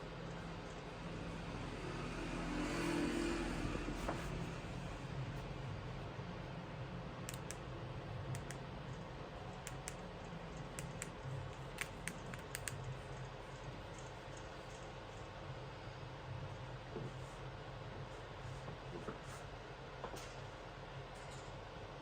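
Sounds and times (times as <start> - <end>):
steady low hum: 0.0 - 22.0
light irregular clicks: 7.2 - 7.7, 8.3 - 15.0.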